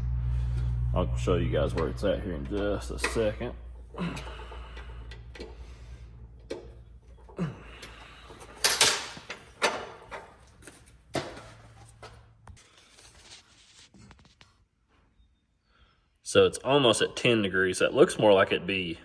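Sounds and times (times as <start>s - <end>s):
low steady hum: 0.0s - 12.9s
metal chop saw clunking: 1.6s - 5.8s, 8.4s - 10.3s.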